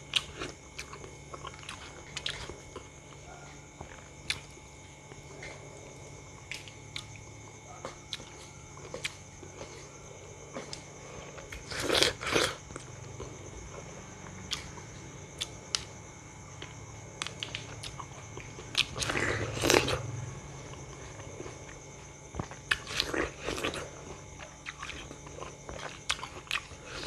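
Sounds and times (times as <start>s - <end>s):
chewing: 0.0s - 27.0s
crunchy bites into fruit: 0.0s - 27.0s.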